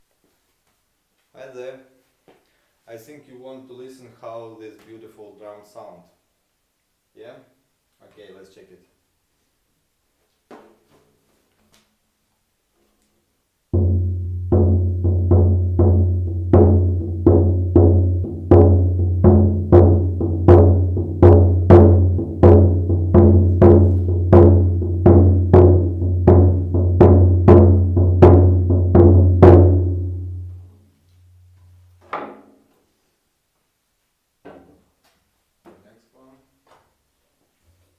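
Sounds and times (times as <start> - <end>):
drum beaten steadily: 13.8 - 30.5.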